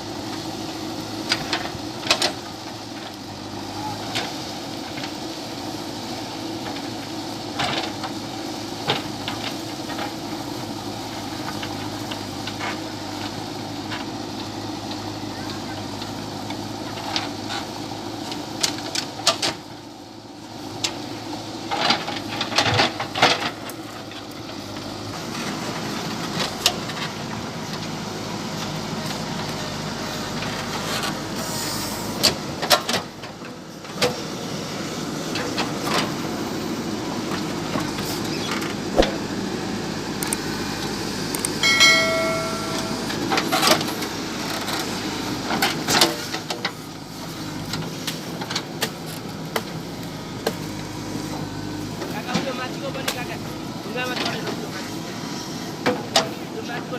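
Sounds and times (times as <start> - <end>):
diesel engine running: 0.0 - 56.9.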